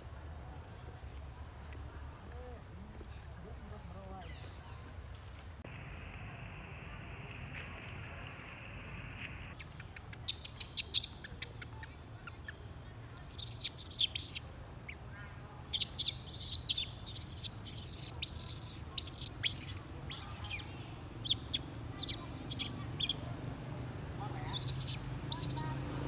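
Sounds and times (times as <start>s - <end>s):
small animal high-pitched chirps: 9.5s - 15.0s, 15.7s - 23.2s, 24.4s - 25.7s.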